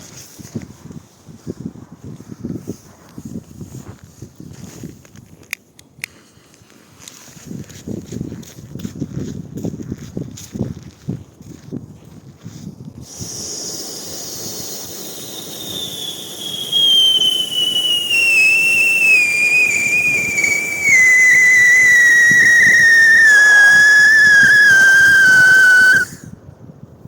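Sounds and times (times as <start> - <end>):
pyrotechnic whistle shrieking: 14.0 - 26.2.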